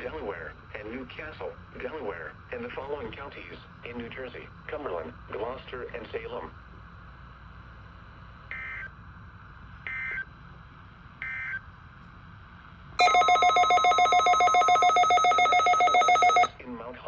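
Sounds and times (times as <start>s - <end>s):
alert data bursts: 13.0s - 16.5s
rapidly pulsing electronic alert tone: 13.0s - 16.5s.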